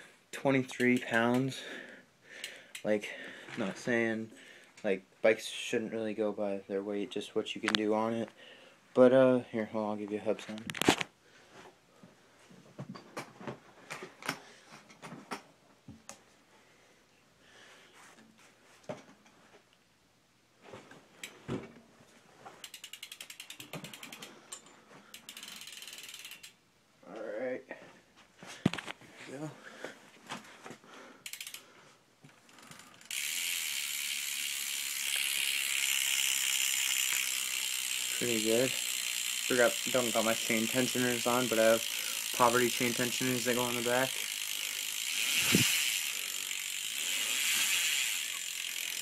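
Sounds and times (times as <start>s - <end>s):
bike hub freewheeling buzz: 0.7s - 2.9s, 22.6s - 26.6s, 31.2s - 31.7s, 32.4s - 49.0s.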